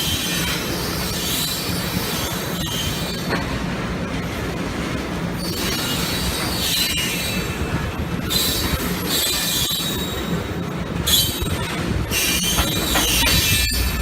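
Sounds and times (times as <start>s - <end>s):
freight train rumbling: 0.0s - 14.0s
train wheels squealing on rails: 0.0s - 14.0s.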